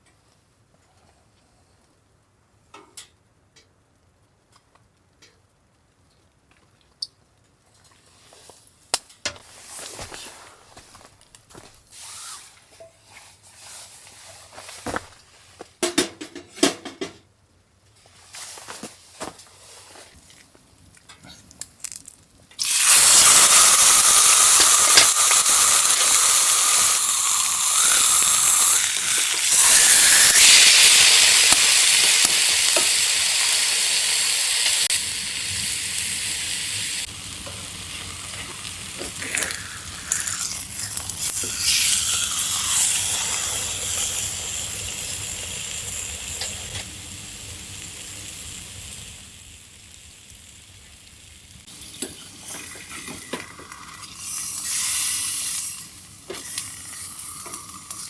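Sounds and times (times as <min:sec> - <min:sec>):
food sizzling in a hot pan: 0:22.6 - 0:58.0.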